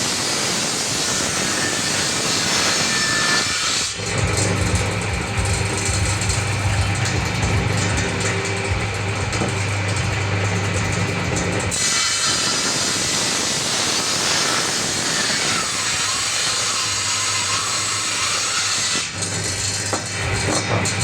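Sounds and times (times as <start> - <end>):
power tool motor humming: 0.0 - 21.0.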